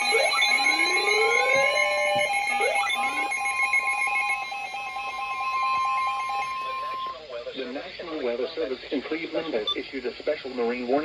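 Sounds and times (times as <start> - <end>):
rising tone sweeps: 0.0 - 4.5
high-pitched alarm tone: 0.0 - 7.2
pulsing tone: 0.0 - 7.2.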